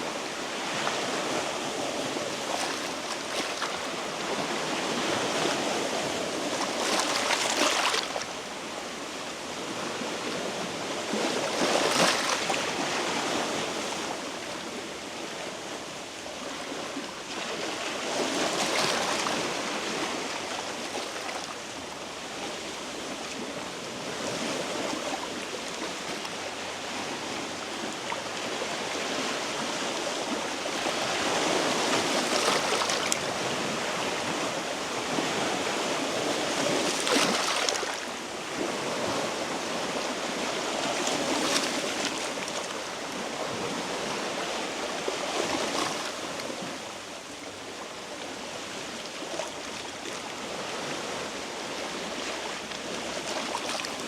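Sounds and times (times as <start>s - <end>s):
waves washing over rocky shore: 28.6s - 46.9s.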